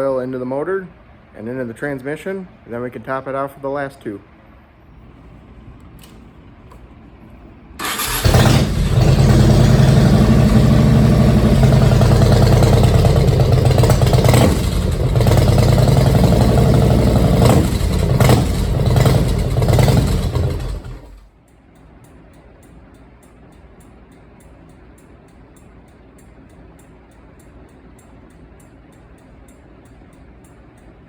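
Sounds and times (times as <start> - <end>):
motorcycle engine starting and running: 7.8 - 21.3.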